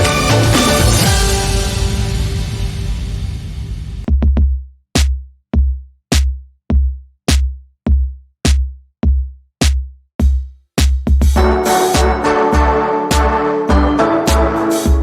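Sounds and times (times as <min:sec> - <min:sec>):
drum machine beat: 0:00.0 - 0:01.7, 0:04.0 - 0:15.0.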